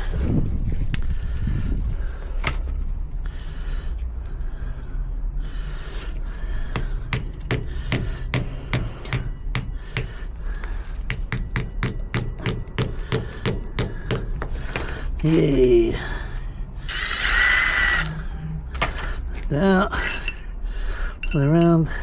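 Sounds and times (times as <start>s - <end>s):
rapid metal-on-metal taps ringing: 6.8s - 15.2s.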